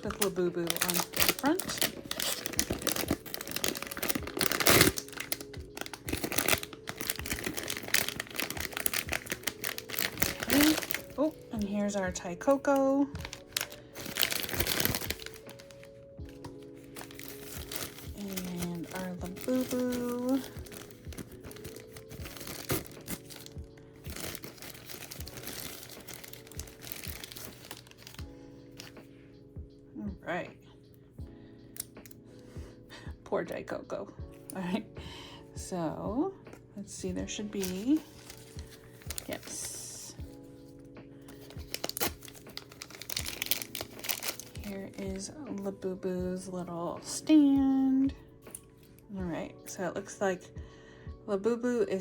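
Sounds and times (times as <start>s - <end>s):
plastic bag ripping: 0.0s - 11.6s, 13.2s - 28.9s, 37.6s - 40.5s, 41.3s - 45.0s
plastic bag crinkling: 0.0s - 11.8s, 12.5s - 29.0s, 37.5s - 45.3s.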